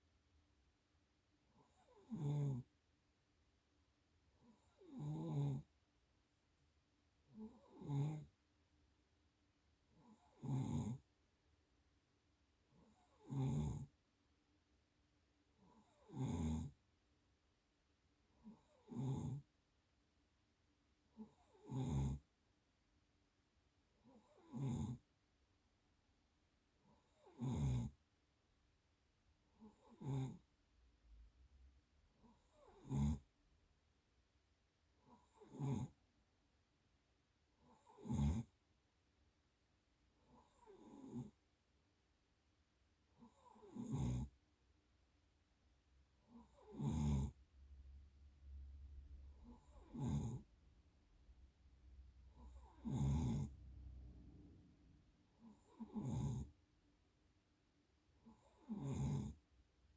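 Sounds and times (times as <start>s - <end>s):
person snoring: 46.3s - 47.4s, 49.3s - 50.4s, 52.4s - 53.6s, 55.4s - 56.5s, 58.3s - 59.4s.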